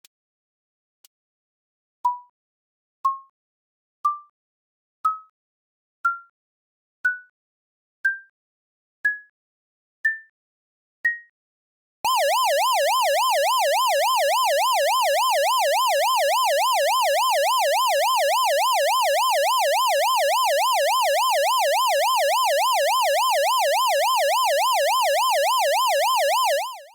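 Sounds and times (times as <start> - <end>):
warbling electronic alarm: 12.1 - 26.9.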